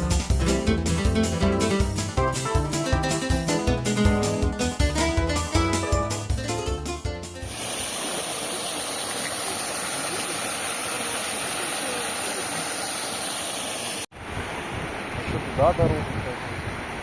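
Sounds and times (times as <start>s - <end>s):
waterfall rushing: 7.4s - 15.6s.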